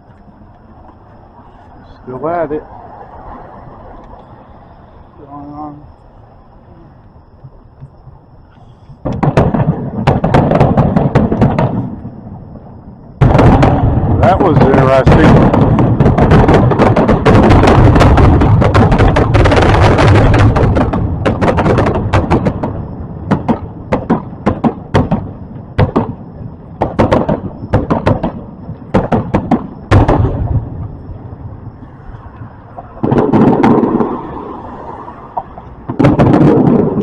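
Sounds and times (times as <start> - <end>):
fireworks bangs and crackling: 7.4 - 37.0.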